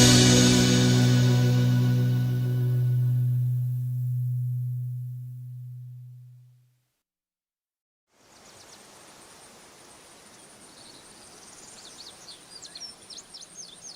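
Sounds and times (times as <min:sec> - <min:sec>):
small birds chirping: 0:08.2 - 0:13.9.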